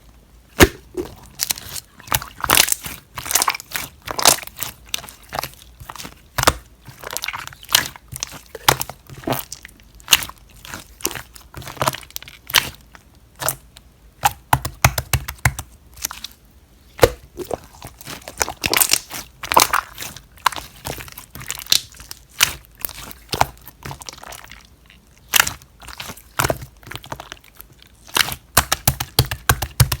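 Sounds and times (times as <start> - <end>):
slime popping and crackling: 0.6 - 12.8, 17.0 - 30.0.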